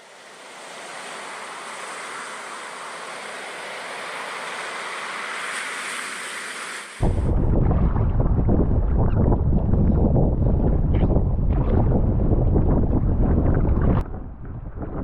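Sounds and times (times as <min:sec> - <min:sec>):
ocean surf rushing: 0:00.0 - 0:07.9
wind buffeting microphone: 0:07.0 - 0:15.0.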